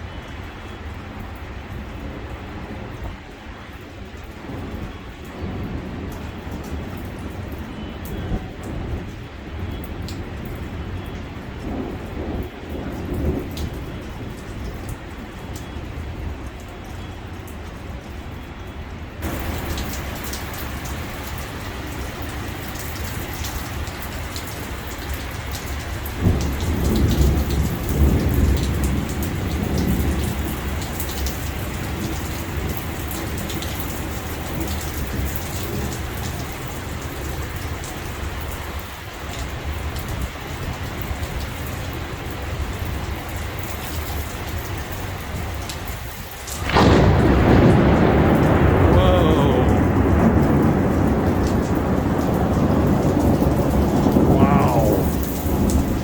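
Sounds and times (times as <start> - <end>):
steady rain: 0.0 - 56.0
thunder rumbling: 4.4 - 15.3, 19.2 - 24.8, 26.0 - 37.6, 46.6 - 56.0
loud thunderclap: 19.2 - 21.6, 46.6 - 56.0.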